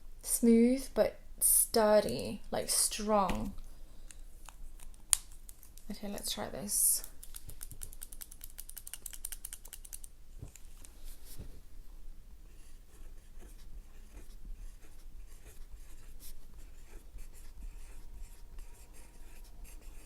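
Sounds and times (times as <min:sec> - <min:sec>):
pencil scratching on paper: 0:12.5 - 0:20.0.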